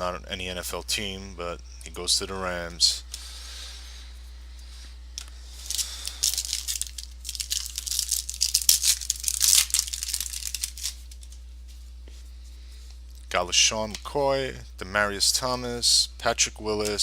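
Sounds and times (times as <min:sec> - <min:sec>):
wrapper tearing and crinkling: 0:05.6 - 0:11.4.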